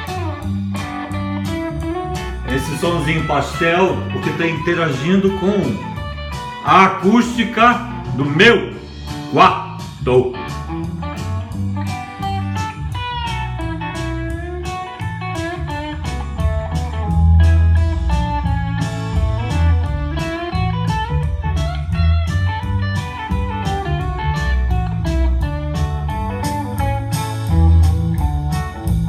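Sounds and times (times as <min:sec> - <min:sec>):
bass: 0:00.0 - 0:29.0
blues electric guitar music: 0:00.0 - 0:29.0
steady drum beat: 0:02.2 - 0:15.4.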